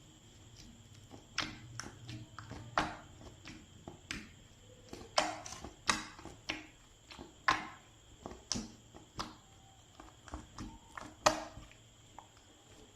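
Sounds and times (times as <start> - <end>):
slime popping and clicking: 10.0 - 12.4.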